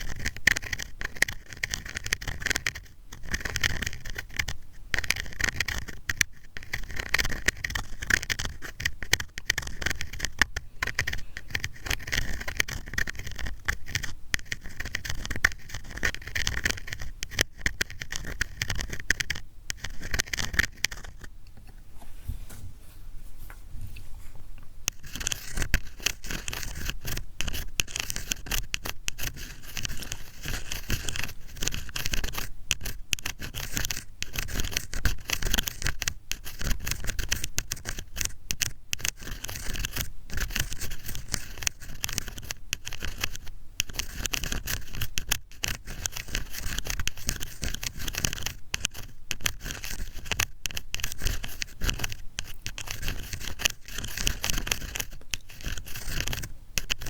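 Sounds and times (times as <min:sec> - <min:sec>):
ear pick scratching microphone: 0:00.0 - 0:21.4, 0:23.6 - 0:57.0
soft low rubbing: 0:21.6 - 0:24.8.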